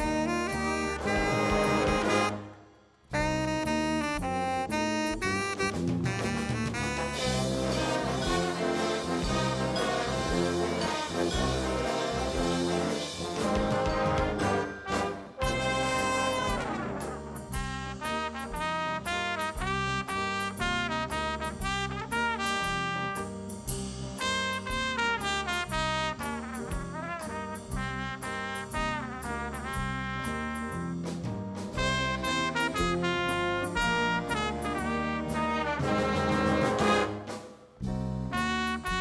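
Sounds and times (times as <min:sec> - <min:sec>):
steady beat: 0:00.0 - 0:02.5, 0:03.2 - 0:22.6
brass music with trumpets and trombones: 0:00.0 - 0:39.0.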